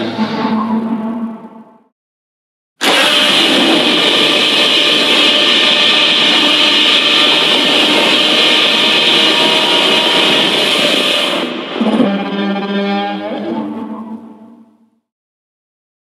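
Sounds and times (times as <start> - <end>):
loud hissing rush: 2.8 - 11.7.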